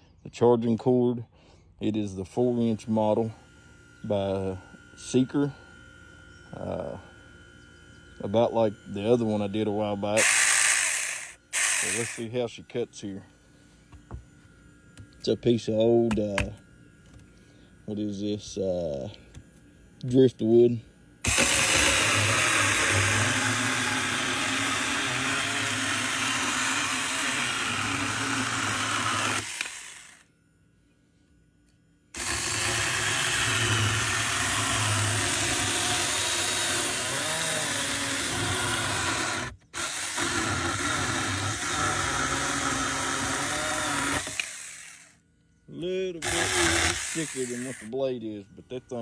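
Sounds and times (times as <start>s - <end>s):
chainsaw cutting wood: 10.0s - 12.3s, 21.2s - 30.2s, 32.2s - 45.2s, 46.2s - 47.9s.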